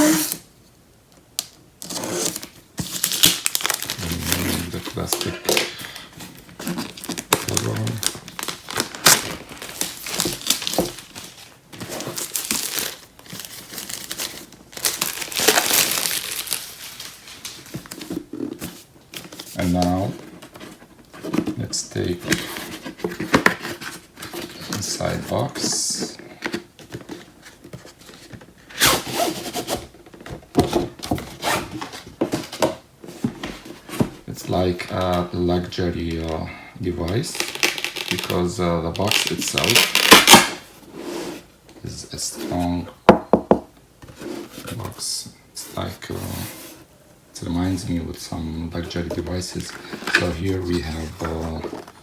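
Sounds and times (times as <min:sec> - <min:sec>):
plastic wrapping crinkling: 0:01.4 - 0:20.6, 0:37.2 - 0:40.7, 0:47.6 - 0:52.0
cardboard box scraping: 0:01.8 - 0:21.4, 0:40.8 - 0:41.5, 0:44.0 - 0:45.0, 0:45.6 - 0:47.0.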